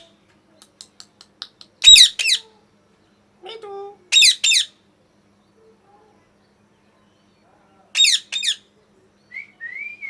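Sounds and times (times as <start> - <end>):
parrot screeching: 1.8 - 2.4, 4.1 - 4.7, 8.0 - 8.6.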